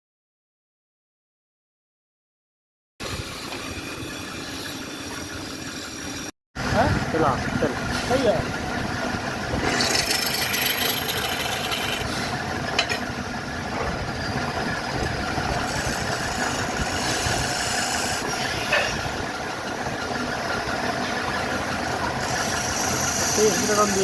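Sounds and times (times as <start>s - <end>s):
lathe running: 7.1s - 24.0s
tool scraping spinning wood: 9.5s - 12.8s, 15.0s - 24.0s.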